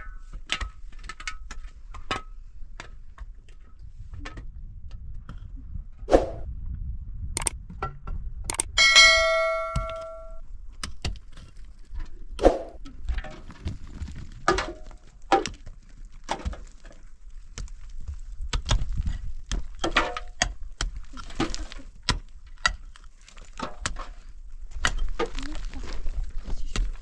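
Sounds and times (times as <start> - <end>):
low rumble: 4.4 - 10.5
wooden knocks and clatter: 12.8 - 25.4.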